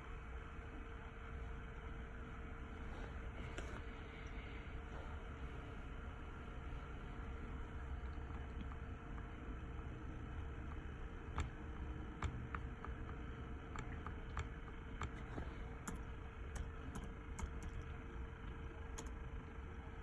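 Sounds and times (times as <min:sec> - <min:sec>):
faint steady tone: 0:00.0 - 0:20.0
low steady hum: 0:00.0 - 0:20.0
computer keys clicking: 0:07.9 - 0:19.2.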